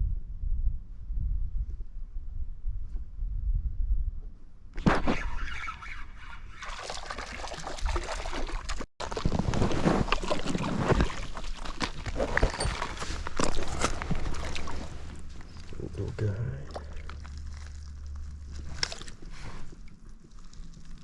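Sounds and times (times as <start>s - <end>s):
water splashing and sloshing: 4.8s - 21.0s.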